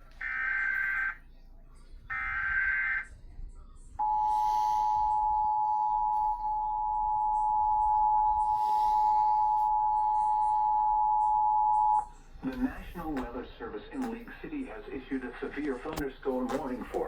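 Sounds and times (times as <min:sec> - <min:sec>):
faint radio hiss: 0:00.0 - 0:06.9, 0:12.0 - 0:17.0.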